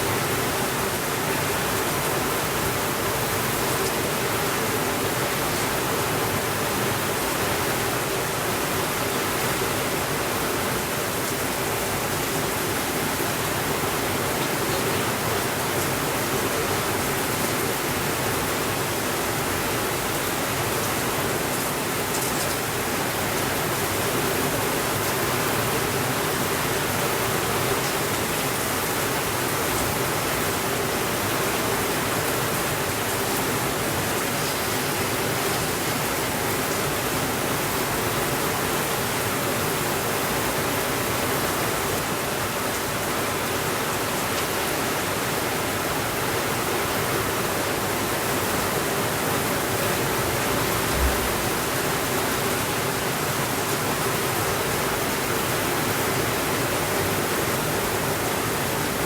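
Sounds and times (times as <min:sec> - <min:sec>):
continuous rainfall: 0:00.0 - 0:59.0
brief low thump: 0:50.8 - 0:51.7.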